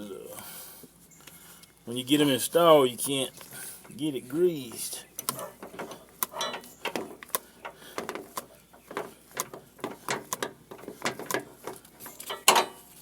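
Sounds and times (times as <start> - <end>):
hand tools and metal parts clicking: 3.0 - 13.0.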